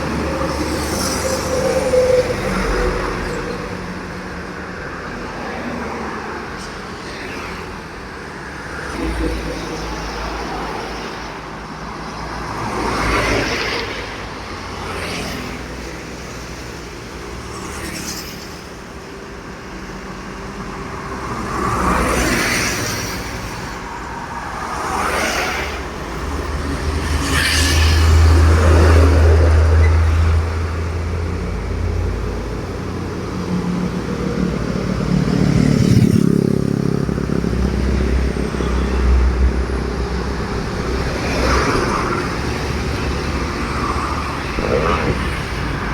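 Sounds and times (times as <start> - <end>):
road traffic passing: 0.0 - 45.9
heavy truck engine: 18.4 - 45.9.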